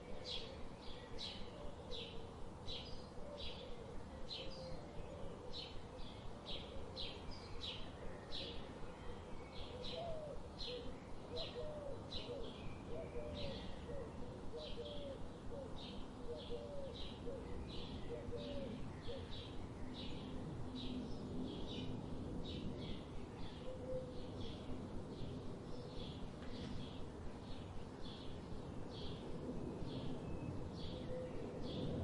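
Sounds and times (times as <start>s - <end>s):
lower wavering bird calls: 0.0s - 20.3s, 23.4s - 24.6s.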